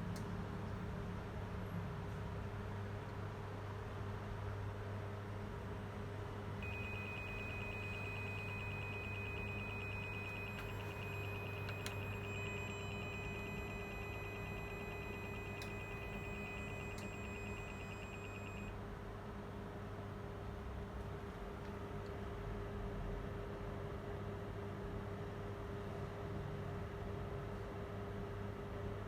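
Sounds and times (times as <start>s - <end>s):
high-pitched pulsing whine: 6.6s - 18.7s
low electrical hum: 6.6s - 19.3s.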